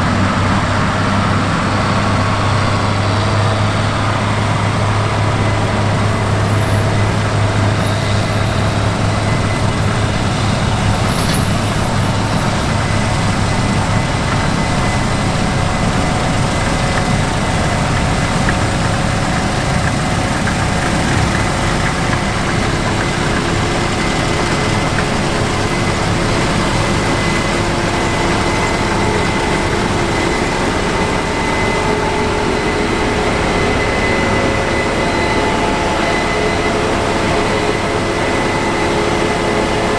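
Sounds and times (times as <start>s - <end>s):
diesel machinery engine drone: 0.0s - 39.9s.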